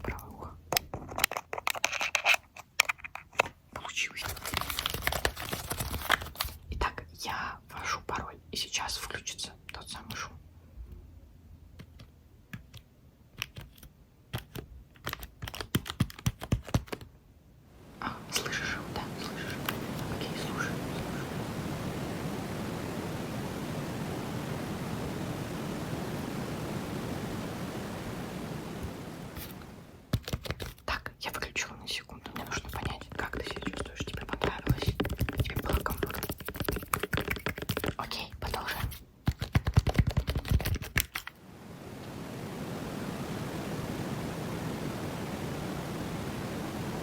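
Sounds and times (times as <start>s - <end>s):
steady pink noise hiss: 0.0s - 47.0s
close-up clicking and tapping: 11.7s - 17.1s, 29.4s - 30.9s, 32.2s - 41.4s
steady low rushing noise: 41.4s - 47.0s.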